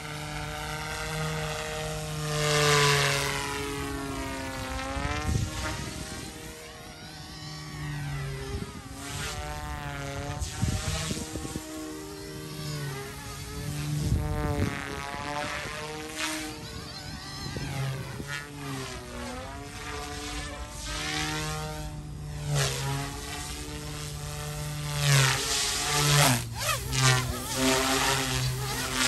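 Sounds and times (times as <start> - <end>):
rc helicopter rotor buzzing: 0.0 - 29.0.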